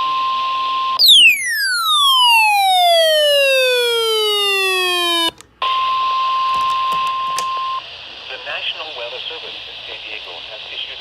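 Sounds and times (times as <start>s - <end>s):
electronic tone sweeping down: 1.0s - 5.3s
steady warning alarm tone: 1.0s - 5.3s
radio hiss: 8.0s - 11.0s.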